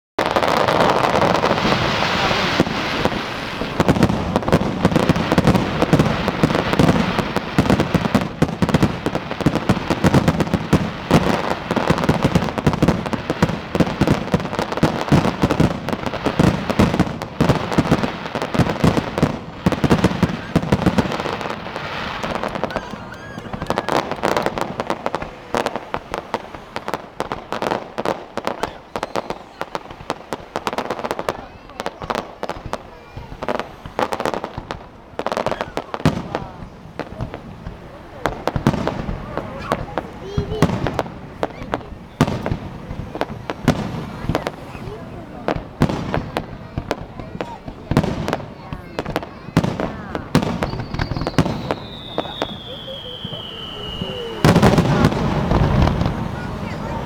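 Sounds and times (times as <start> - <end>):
fireworks crackling and banging: 0.2 - 57.0.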